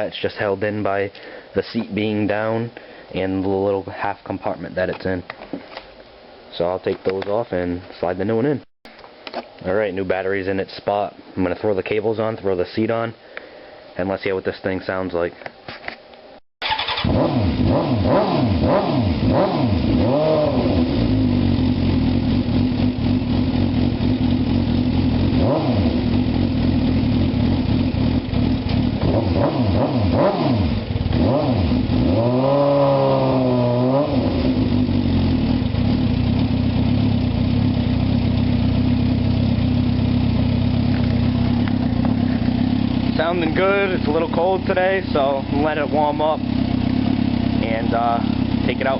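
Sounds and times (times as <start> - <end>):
motorcycle engine revving: 16.6 - 48.9
motorcycle engine idling: 20.8 - 29.2, 33.2 - 48.9.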